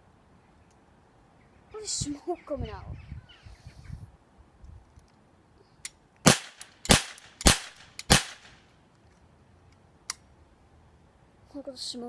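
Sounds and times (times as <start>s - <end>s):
toy cap gun shots: 6.2s - 8.6s.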